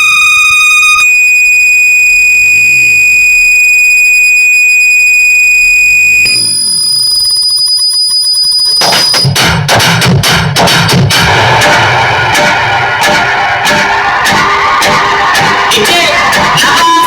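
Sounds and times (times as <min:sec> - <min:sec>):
high electronic test tone: 0:00.0 - 0:09.4.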